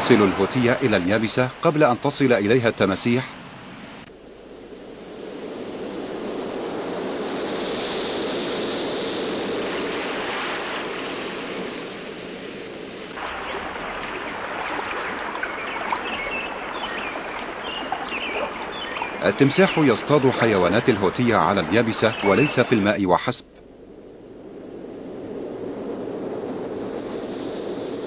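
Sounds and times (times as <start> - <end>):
thin water sound with ticks: 13.2 - 22.8
water churning and splashing: 13.2 - 22.8.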